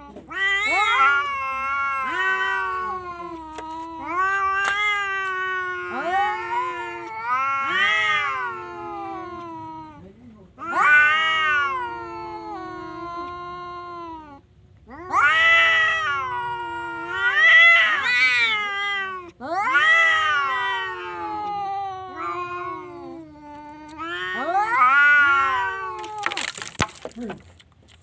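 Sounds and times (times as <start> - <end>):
cat yowling: 0.0 - 10.0, 10.6 - 26.8.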